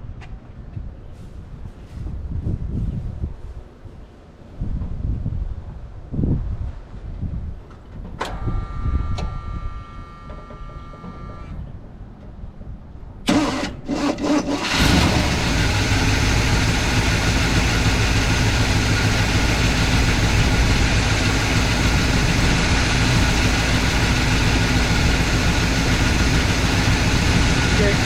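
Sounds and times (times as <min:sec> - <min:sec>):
truck engine running: 0:08.3 - 0:12.2, 0:13.2 - 0:28.0
engine starter cranking: 0:13.3 - 0:20.6.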